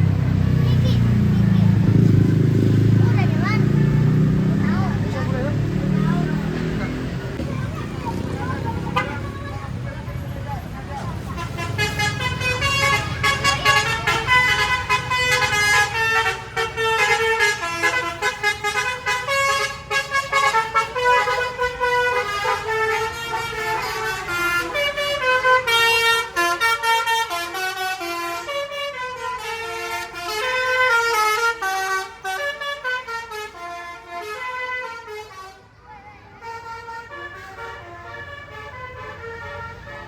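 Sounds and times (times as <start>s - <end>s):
bus engine rumbling: 0.0s - 40.0s
multi-tone air horn melody: 8.7s - 9.6s, 11.2s - 40.0s.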